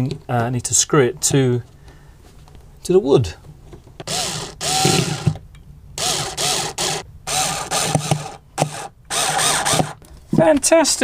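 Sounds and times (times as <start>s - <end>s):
cordless drill driving screws: 4.0s - 5.4s, 6.0s - 10.0s.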